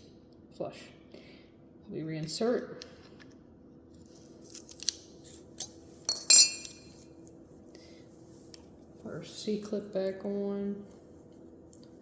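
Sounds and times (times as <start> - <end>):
sharp ringing metallic clink: 6.1 - 6.9.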